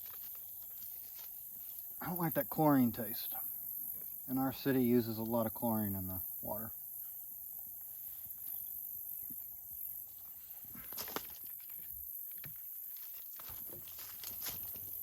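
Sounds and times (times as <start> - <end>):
rustling: 0.0 - 2.0, 7.9 - 15.0
crickets chirping: 0.0 - 15.0.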